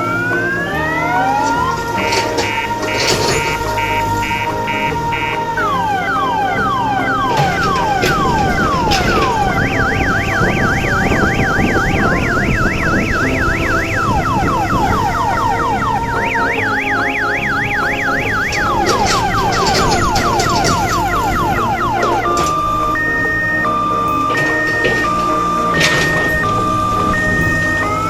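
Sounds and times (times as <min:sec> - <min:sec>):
warbling electronic siren: 0:00.0 - 0:28.0.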